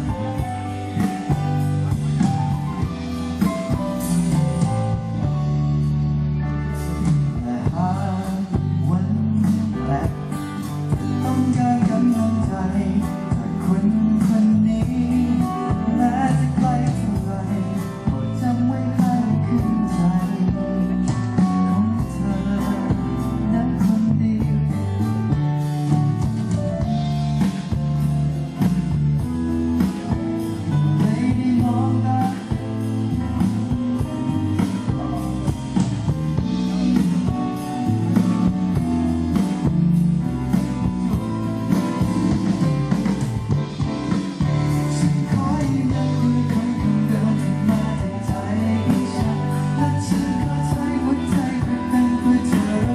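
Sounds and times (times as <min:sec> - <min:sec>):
live pop-rock band: 0:00.0 - 0:52.9
person singing: 0:06.9 - 0:25.4, 0:30.7 - 0:38.5, 0:44.4 - 0:52.9.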